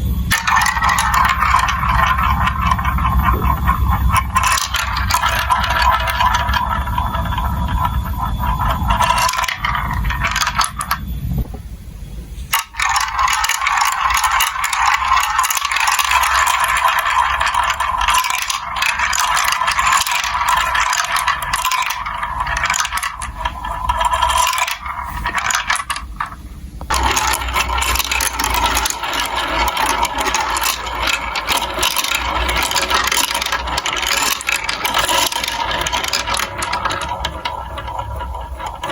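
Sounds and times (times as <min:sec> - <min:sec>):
marbles rattling down plastic tracks: 0:00.0 - 0:11.1, 0:12.5 - 0:38.9.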